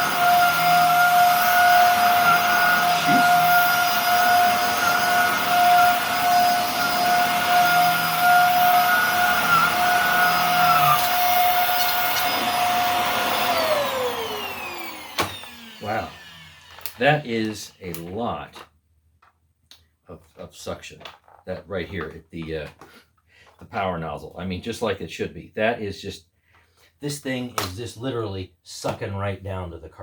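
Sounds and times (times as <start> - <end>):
upright vacuum cleaner whining: 0.0 - 18.0.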